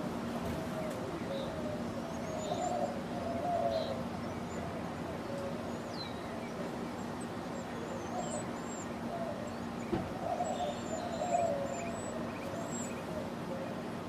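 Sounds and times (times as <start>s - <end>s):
background hiss and hum: 0.0s - 14.0s
small birds whistling and trilling: 0.6s - 13.4s.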